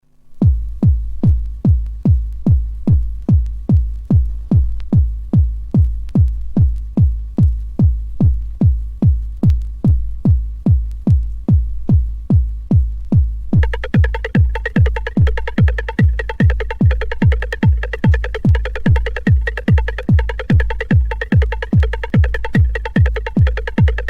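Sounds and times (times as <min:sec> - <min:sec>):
faint steady hum: 0:00.0 - 0:24.0
techno kick drum: 0:00.4 - 0:24.0.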